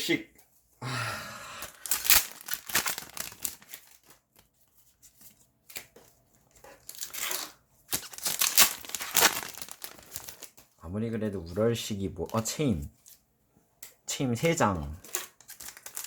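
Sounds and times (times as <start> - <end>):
wrappers being torn and crinkled: 1.6 - 4.5, 6.8 - 10.8, 12.2 - 13.2, 15.0 - 16.0.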